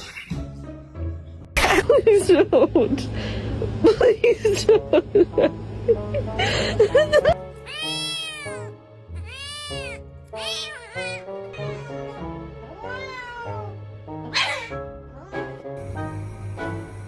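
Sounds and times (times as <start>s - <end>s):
background music: 0.0s - 17.0s
cat meowing: 7.6s - 15.6s.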